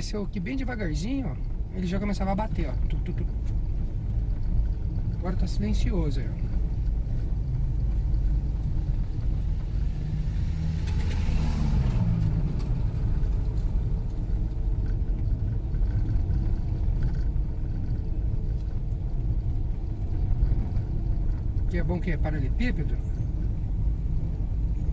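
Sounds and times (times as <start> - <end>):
tyre and engine rumble: 0.0 - 24.9.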